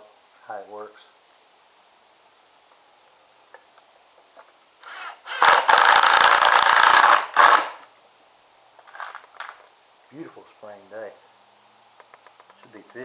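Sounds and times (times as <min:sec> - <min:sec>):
impact driver driving screw: 0:04.8 - 0:07.9.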